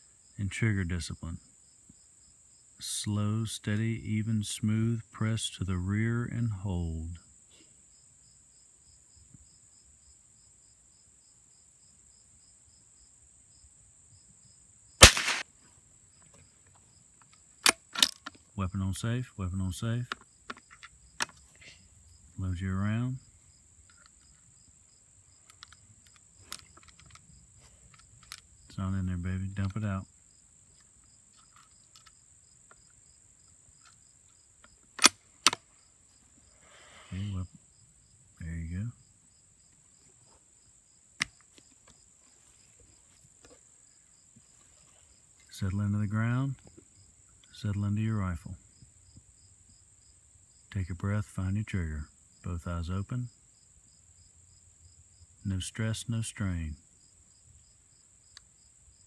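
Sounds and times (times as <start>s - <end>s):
crickets chirping: 1.1s - 2.8s, 7.2s - 15.4s, 16.0s - 50.8s, 52.0s - 52.5s, 53.2s - 55.5s, 56.7s - 59.0s
rifle bolt clicks: 15.0s - 15.4s, 17.6s - 18.4s, 35.0s - 35.6s
rifle shot: 15.0s - 15.4s
small sharp clicks: 15.0s - 15.4s.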